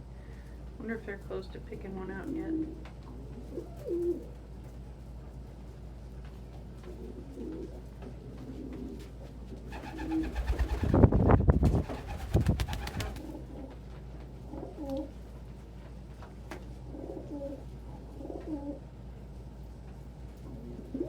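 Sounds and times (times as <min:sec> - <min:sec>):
wings flapping and rustling: 0:06.8 - 0:13.9
pigeons cooing: 0:09.7 - 0:11.0, 0:11.8 - 0:13.6, 0:20.5 - 0:21.0.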